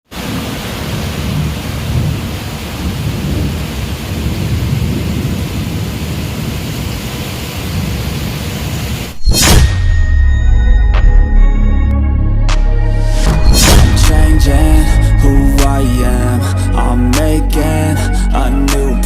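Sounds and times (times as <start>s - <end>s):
heavy rain: 0.0s - 9.2s.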